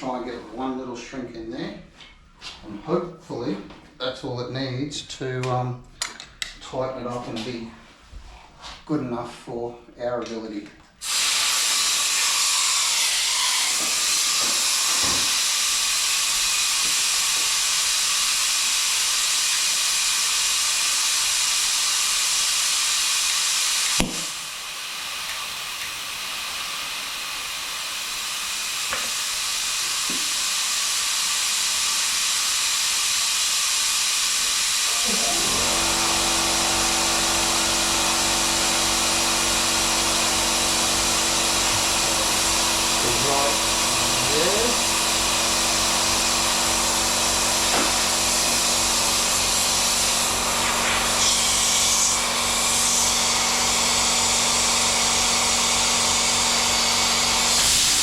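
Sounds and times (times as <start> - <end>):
gas torch flame hissing: 11.0 - 58.0
sharp click: 24.0 - 24.3
motor humming: 28.6 - 58.0.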